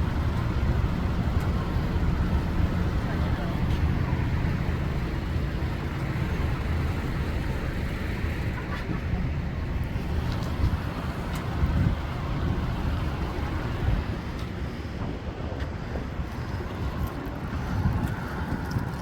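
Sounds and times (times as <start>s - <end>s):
road traffic passing: 0.0s - 19.0s
wind rumbling on microphone: 0.0s - 19.0s.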